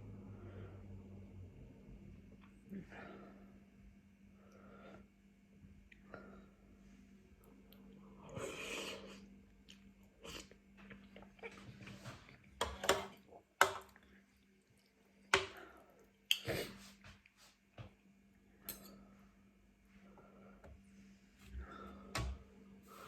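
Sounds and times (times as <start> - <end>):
person chewing: 7.7 - 17.0.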